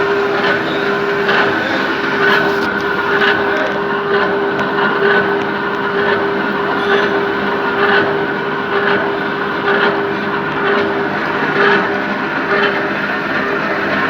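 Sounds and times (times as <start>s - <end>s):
reciprocating saw cutting: 0.0s - 10.1s.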